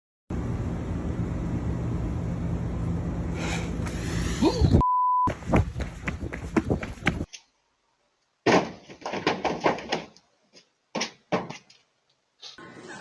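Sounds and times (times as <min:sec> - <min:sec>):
censor bleep: 0:04.8 - 0:05.3
sharp knocks: 0:08.4 - 0:10.2, 0:11.0 - 0:11.7.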